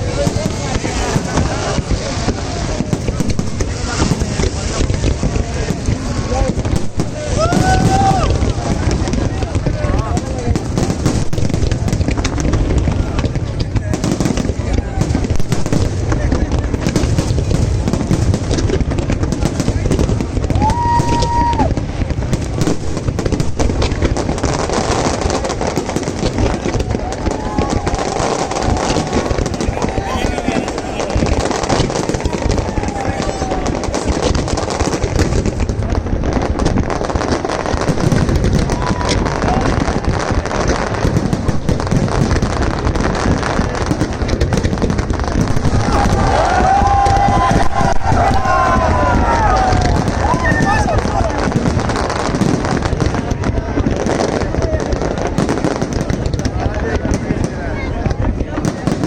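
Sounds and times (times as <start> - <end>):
voices: 0.0 - 22.6, 23.8 - 59.0
fireworks booms: 0.0 - 59.0
fireworks crackling: 0.0 - 59.0
firework whistle: 20.5 - 21.8.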